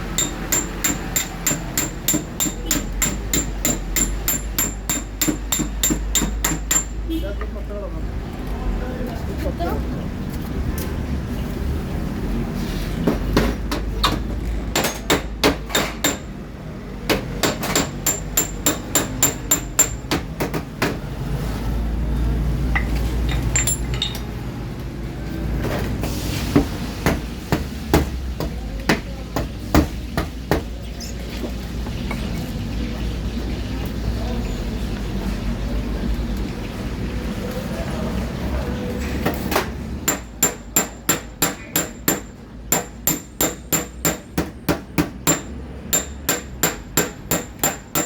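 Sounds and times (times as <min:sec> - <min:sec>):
hammer tapping sheet metal: 0:00.1 - 0:07.0, 0:17.1 - 0:21.0.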